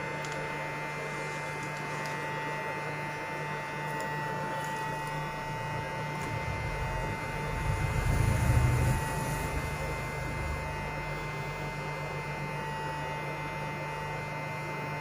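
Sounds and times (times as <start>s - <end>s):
electrical hum with high whine: 0.0s - 15.0s
low rumble: 5.8s - 12.2s.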